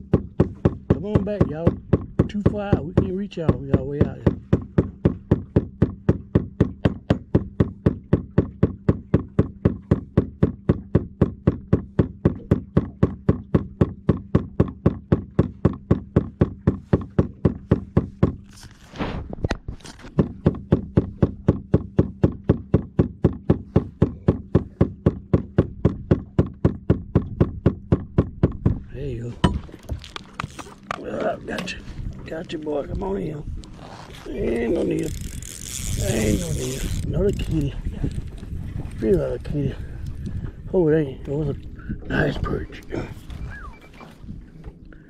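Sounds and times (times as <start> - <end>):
rapid mechanical knocking: 0.0 - 18.5, 20.1 - 29.7
low steady hum: 0.0 - 45.0.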